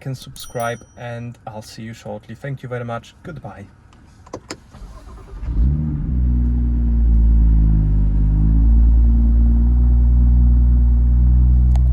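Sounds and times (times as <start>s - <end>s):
car engine starting and idling: 4.5s - 8.0s.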